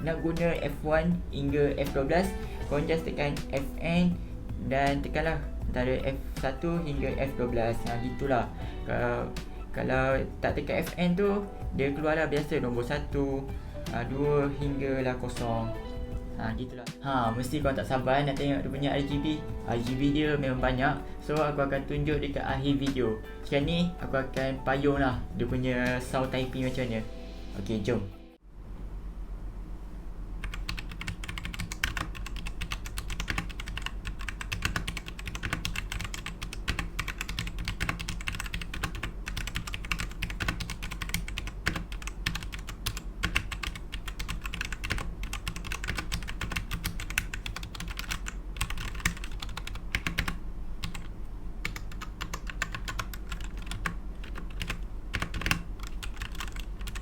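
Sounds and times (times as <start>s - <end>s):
mechanical keyboard typing: 30.4s - 57.0s.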